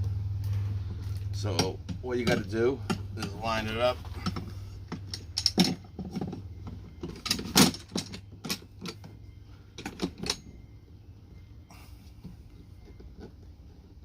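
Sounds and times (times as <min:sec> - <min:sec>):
handle bars clicking and knocking: 0:01.4 - 0:09.2.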